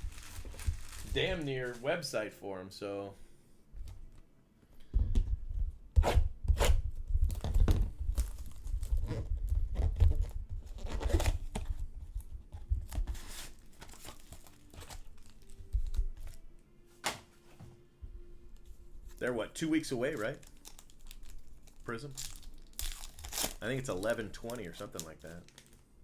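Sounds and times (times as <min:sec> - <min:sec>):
wrappers tearing and crinkling: 0:00.0 - 0:01.9, 0:07.3 - 0:11.6, 0:13.2 - 0:16.4, 0:19.2 - 0:25.9.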